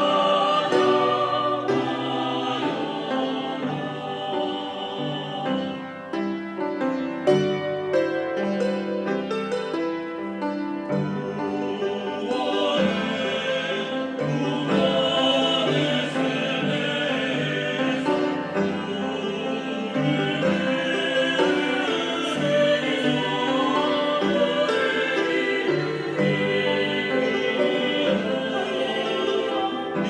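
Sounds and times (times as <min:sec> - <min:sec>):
instrumental accompaniment: 0:00.0 - 0:30.0
person singing sacred song with vibrato: 0:11.7 - 0:18.0, 0:18.8 - 0:30.0.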